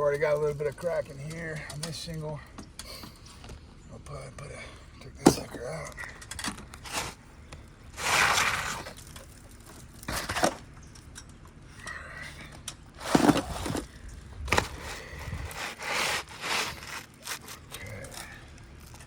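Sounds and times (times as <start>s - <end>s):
shingle crunching and tearing: 5.2s - 11.6s, 12.5s - 19.0s.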